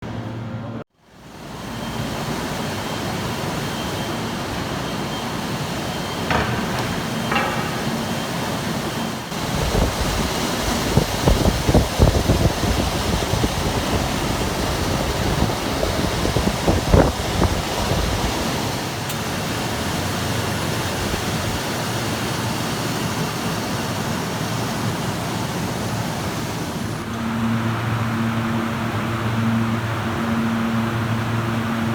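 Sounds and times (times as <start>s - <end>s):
whirring machinery: 1.2s - 31.9s
short knocks: 6.3s - 9.9s.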